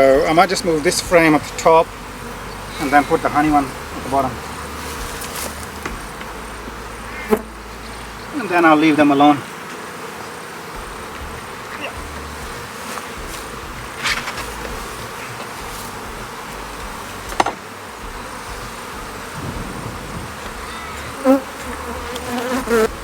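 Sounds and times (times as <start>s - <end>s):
honeybees buzzing: 0.0s - 23.0s
knock on hive: 10.7s - 23.0s.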